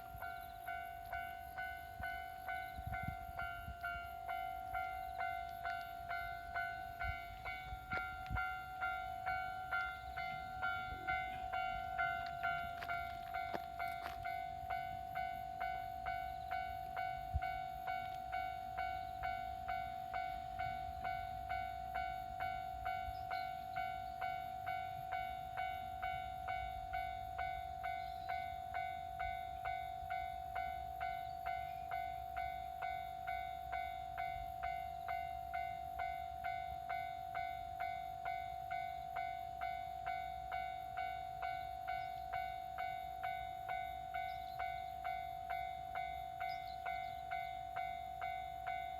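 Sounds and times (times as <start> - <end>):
level crossing bell ringing: 0.0 - 20.6.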